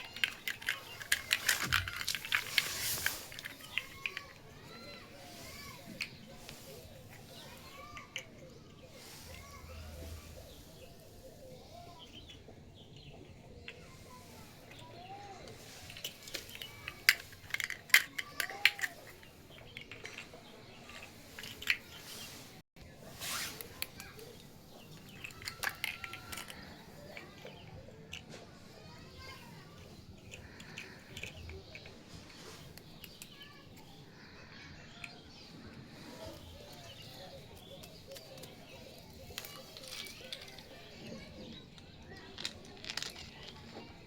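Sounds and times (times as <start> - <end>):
plastic toy pieces clicking: 0.0 - 8.5, 15.6 - 22.1, 23.6 - 33.9, 36.8 - 44.0
brief rustle: 0.0 - 12.0, 13.6 - 33.9, 35.0 - 44.0
faint background voices: 0.0 - 44.0.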